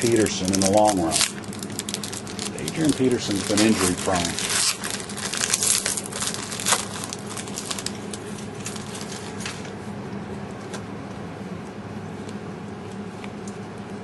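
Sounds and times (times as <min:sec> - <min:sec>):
foil wrappers crinkling and tearing: 0:00.0 - 0:09.7.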